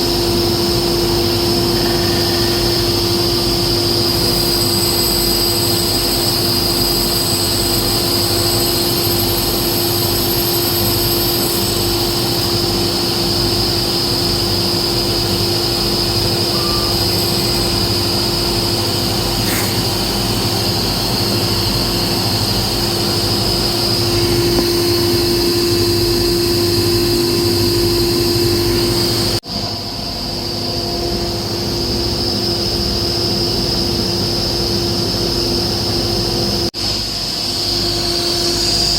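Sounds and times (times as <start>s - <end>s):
motor whining steadily: 0.0s - 29.4s.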